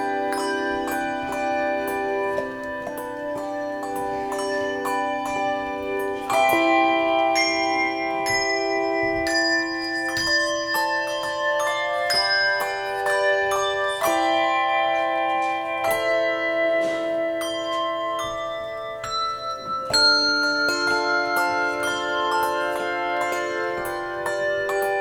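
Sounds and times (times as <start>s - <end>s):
handbell choir playing: 0.0s - 25.0s.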